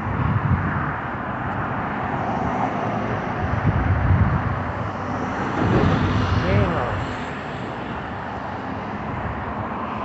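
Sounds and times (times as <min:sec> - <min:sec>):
low wind gusts buffeting: 0:00.0 - 0:10.0
wind rushing over microphone: 0:00.0 - 0:10.0.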